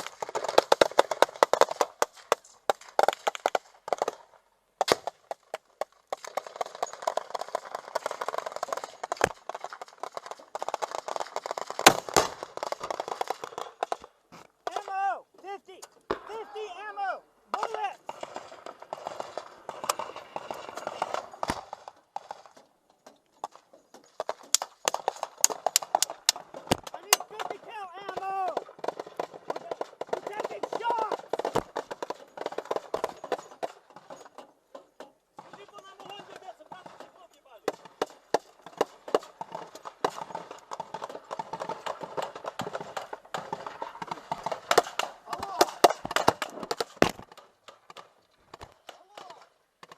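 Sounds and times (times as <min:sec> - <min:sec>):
small-arms gunfire: 0:00.0 - 0:04.2, 0:04.8 - 0:05.4, 0:06.2 - 0:14.1, 0:17.5 - 0:22.4, 0:37.7 - 0:47.4
sharp cracks and knocks: 0:00.0 - 0:15.0, 0:15.8 - 0:16.4, 0:17.5 - 0:49.9
scattered clicks: 0:17.5 - 0:34.4.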